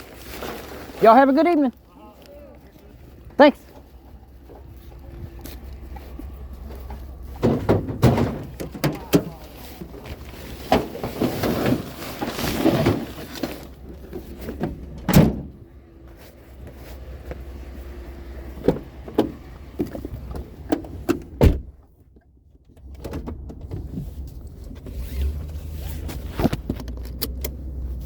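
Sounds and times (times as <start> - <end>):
rustling: 2.8 - 14.6
vehicle door shutting: 7.1 - 9.5, 14.4 - 15.6, 18.6 - 21.8
knocking and clattering: 7.4 - 9.3.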